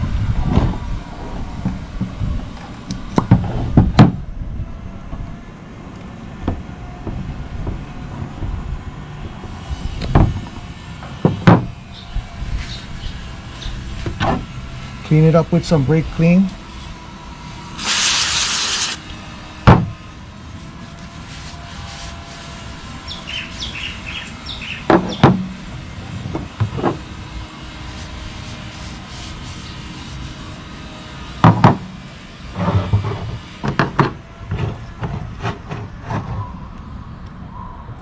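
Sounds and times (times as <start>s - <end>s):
aerosol spray hissing: 17.8s - 19.0s.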